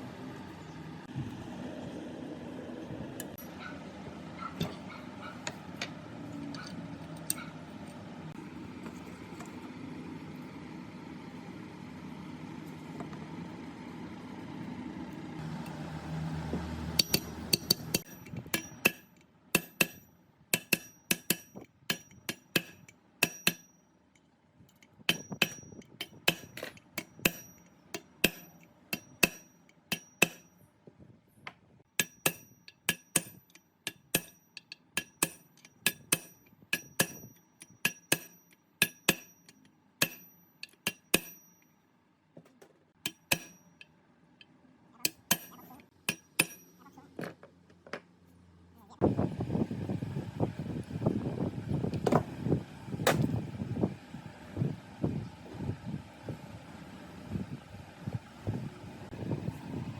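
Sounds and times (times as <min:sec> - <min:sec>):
hammer striking steel: 0:16.9 - 0:23.8, 0:25.1 - 0:30.6, 0:31.9 - 0:41.7, 0:43.0 - 0:43.9, 0:45.0 - 0:46.8.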